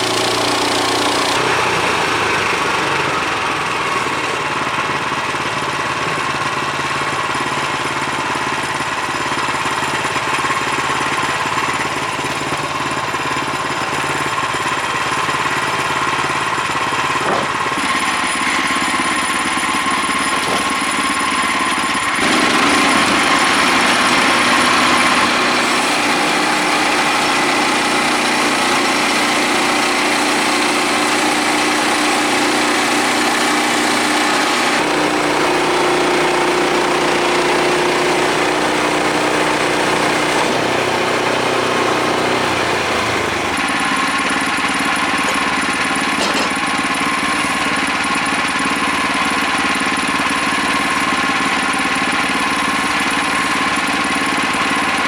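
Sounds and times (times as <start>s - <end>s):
sawmill engine running: 0.0s - 55.0s
band blade cutting log: 16.8s - 48.1s.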